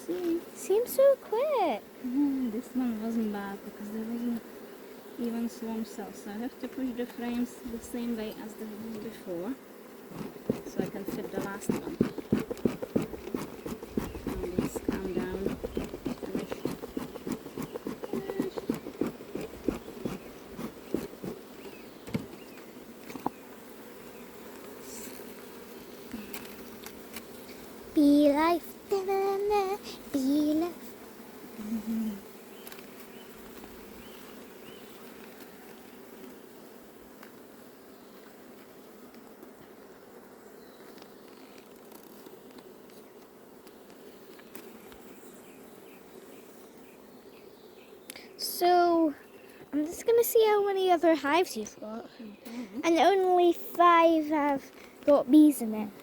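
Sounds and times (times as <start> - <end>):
honeybees buzzing: 0.0 - 56.0
small ticks: 10.1 - 21.8, 24.5 - 28.2, 31.6 - 34.3, 35.0 - 36.4, 37.2 - 37.5, 38.2 - 39.9, 40.8 - 45.2, 48.0 - 48.3.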